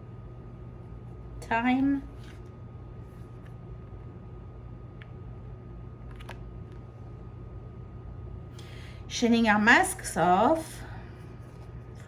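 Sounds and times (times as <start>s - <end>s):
low electrical hum: 0.0s - 12.0s
cards clicking and tapping: 6.0s - 6.8s.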